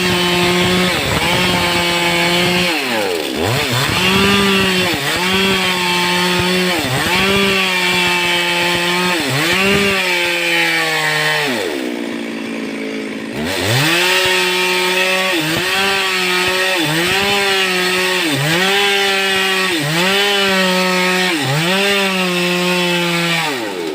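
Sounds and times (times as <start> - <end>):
chainsaw cutting wood: 0.0 - 23.9.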